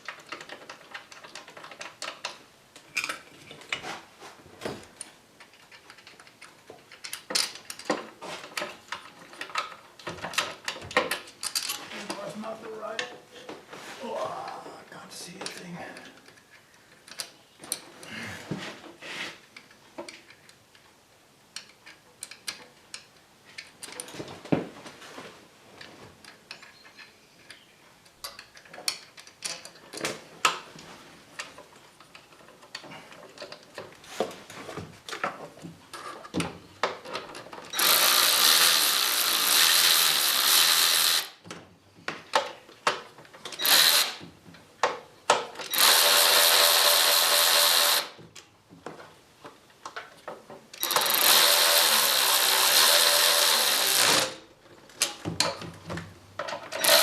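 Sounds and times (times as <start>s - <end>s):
metal tools clicking and knocking: 28.2s - 30.1s
power tool running: 37.8s - 41.3s, 43.6s - 44.2s, 45.7s - 48.2s, 50.8s - 54.4s, 56.8s - 57.0s.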